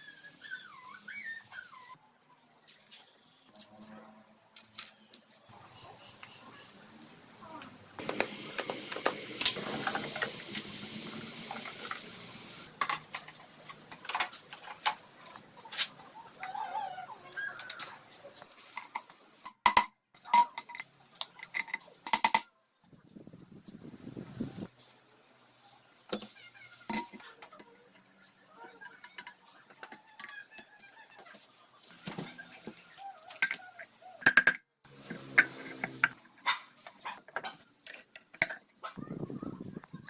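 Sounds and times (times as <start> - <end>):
steady hiss: 5.6 - 13.3.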